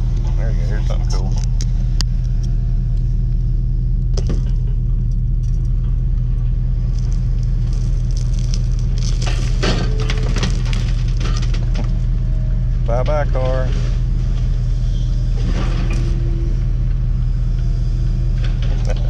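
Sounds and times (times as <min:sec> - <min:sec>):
engine running: 0:00.0 - 0:19.0
crunching metal and glass: 0:04.2 - 0:12.2.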